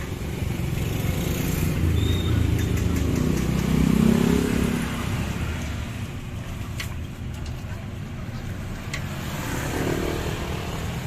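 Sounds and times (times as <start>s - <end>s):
vehicle passing close by: 0.0s - 6.2s, 9.1s - 11.0s
street traffic rumble: 0.0s - 11.0s.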